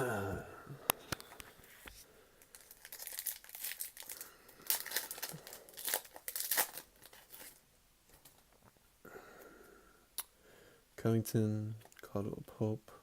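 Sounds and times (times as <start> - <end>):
wrapper crinkling and tearing: 2.4 - 8.4.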